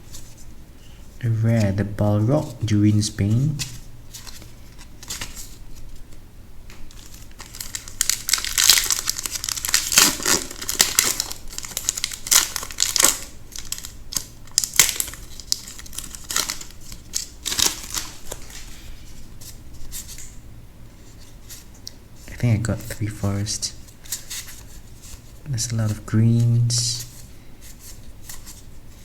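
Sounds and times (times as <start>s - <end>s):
foil wrapper crinkling: 6.8s - 18.7s.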